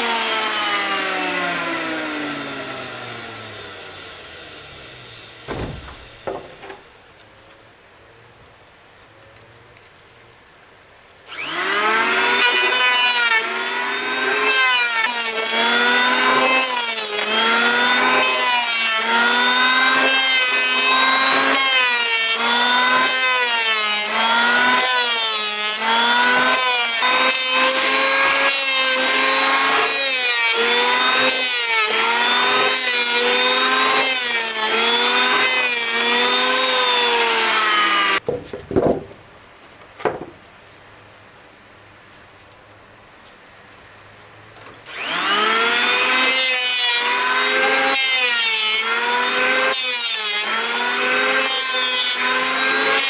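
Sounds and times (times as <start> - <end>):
saw cutting wood: 0.0 - 6.9, 11.3 - 39.1, 44.8 - 53.0
short knocks: 5.5 - 7.0, 38.2 - 40.5.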